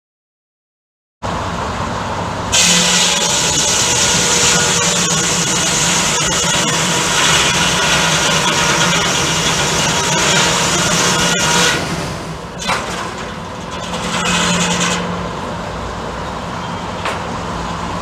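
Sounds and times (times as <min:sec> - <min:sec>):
sawmill running: 0:02.5 - 0:18.0
high hiss: 0:02.6 - 0:14.8.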